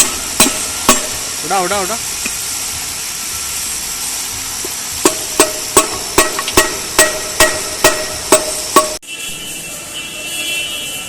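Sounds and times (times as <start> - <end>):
hammer striking metal: 0.0 - 1.3, 5.0 - 9.0
steady hiss: 0.0 - 11.0.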